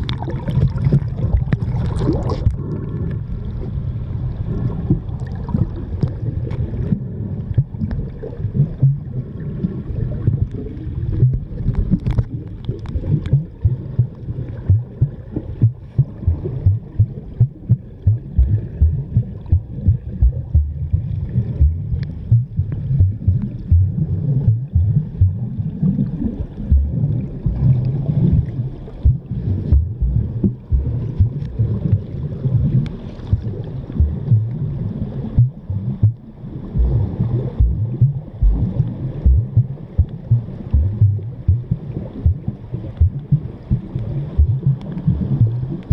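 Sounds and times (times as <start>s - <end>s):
muffled underwater stream gurgle: 0.0s - 45.9s
faint clicks and knocks: 11.2s - 20.8s.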